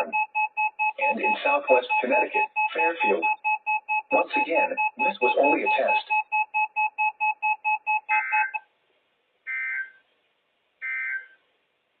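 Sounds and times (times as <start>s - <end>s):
rapid two-tone electronic beeping: 0.0s - 8.6s.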